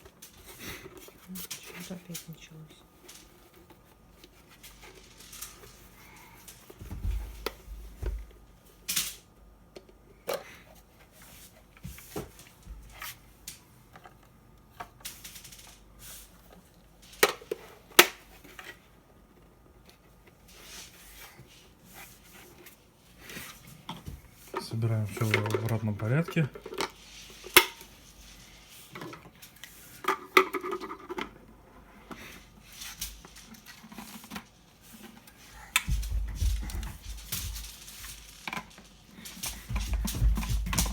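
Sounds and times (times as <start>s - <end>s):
plastic parts clicking and rattling: 23.9s - 28.0s, 32.1s - 40.9s
dull thumps: 39.5s - 40.9s.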